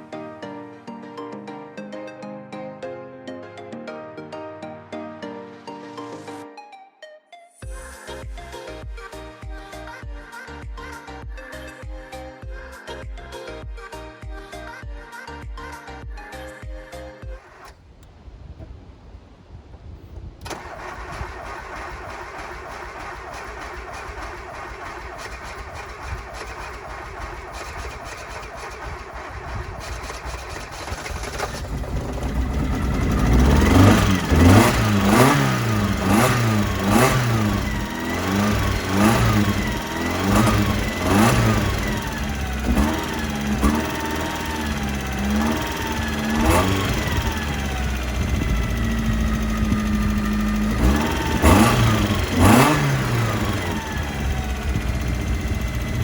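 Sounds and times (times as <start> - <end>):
car engine cranking and revving: 20.4 - 56.0.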